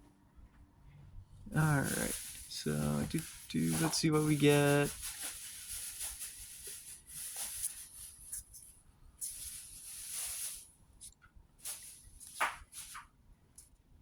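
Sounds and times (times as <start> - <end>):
foil wrapper crinkling: 1.5 - 10.7.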